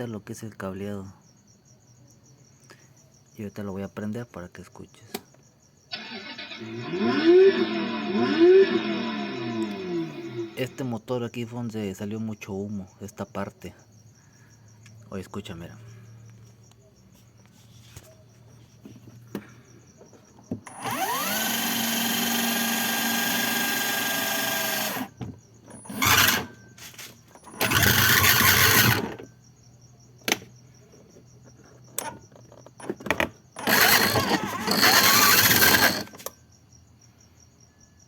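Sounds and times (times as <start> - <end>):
motor whining: 5.9 - 10.8, 20.7 - 25.1, 25.8 - 26.6, 27.5 - 29.2, 33.6 - 36.2.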